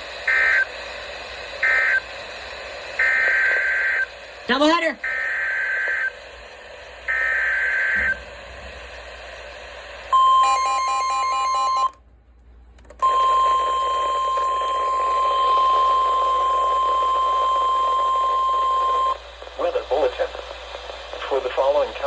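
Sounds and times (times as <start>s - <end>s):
steady warning alarm tone: 0.2s - 0.9s, 1.5s - 8.7s, 10.1s - 12.0s, 13.0s - 19.3s.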